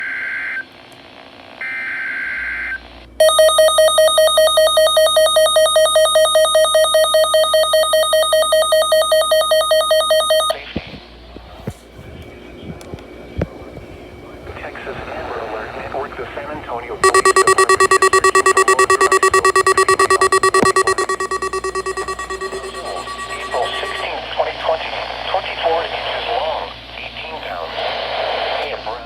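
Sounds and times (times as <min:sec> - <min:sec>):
clicks: 0:17.0 - 0:24.0
harsh pulsing attention tone: 0:17.0 - 0:24.1
screeching digital data bursts: 0:17.0 - 0:24.1.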